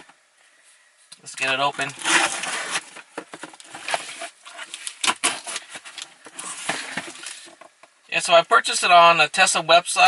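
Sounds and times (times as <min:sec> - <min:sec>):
packaging rustling: 0:01.8 - 0:07.6.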